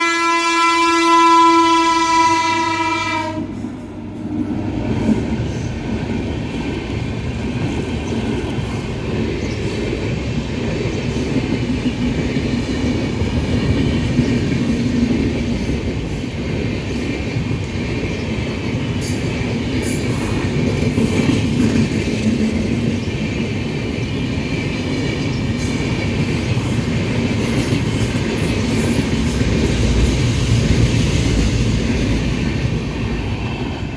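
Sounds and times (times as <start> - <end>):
train horn: 0.0 - 3.8
train rolling by rumble: 0.0 - 33.9.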